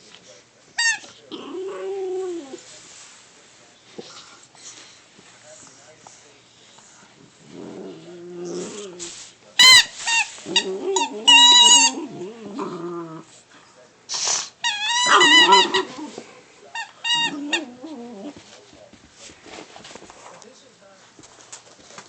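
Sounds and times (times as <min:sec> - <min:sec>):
squeaky dog toy squeaking: 0:00.8 - 0:01.1, 0:09.6 - 0:10.3, 0:11.0 - 0:12.0, 0:14.6 - 0:15.9, 0:16.8 - 0:17.6
puppy growling: 0:00.9 - 0:02.7, 0:07.2 - 0:09.2, 0:10.4 - 0:13.4, 0:14.6 - 0:16.4, 0:17.0 - 0:18.5.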